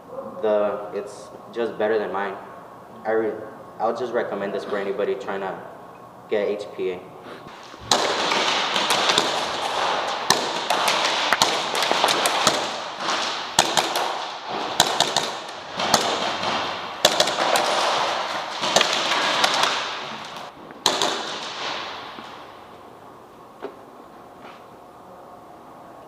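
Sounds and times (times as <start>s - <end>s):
airsoft guns firing: 7.5s - 22.7s.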